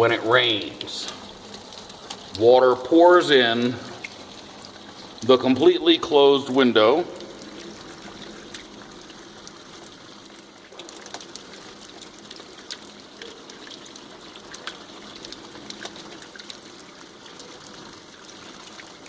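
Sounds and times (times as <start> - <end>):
water dripping: 0.0 - 19.0
water trickling and splashing: 0.0 - 19.0.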